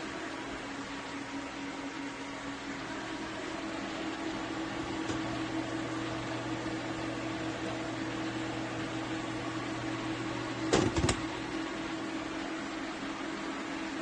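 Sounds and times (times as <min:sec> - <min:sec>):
induction hob fan hum: 0:00.0 - 0:14.0.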